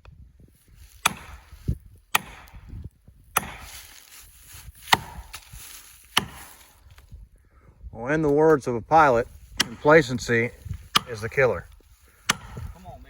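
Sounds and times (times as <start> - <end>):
blows driving a wedge into wood: 0.7 - 6.9, 9.3 - 13.0.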